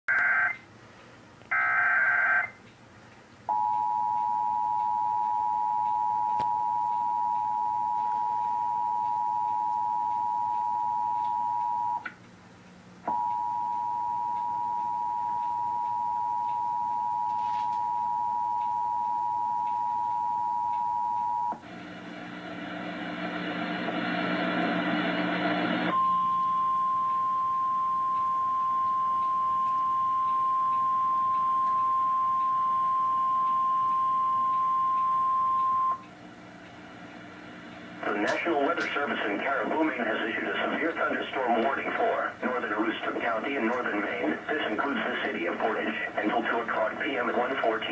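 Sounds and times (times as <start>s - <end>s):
steady warning alarm tone: 0.1s - 0.6s, 1.5s - 2.6s, 3.5s - 12.1s, 13.0s - 21.8s, 24.4s - 47.9s
two-tone attention signal: 25.9s - 36.0s.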